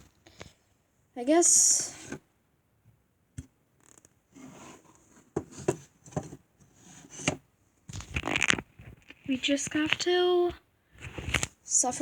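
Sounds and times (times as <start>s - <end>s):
scraping and rustling: 4.4s - 12.0s
plastic toy pieces clicking: 8.0s - 10.2s.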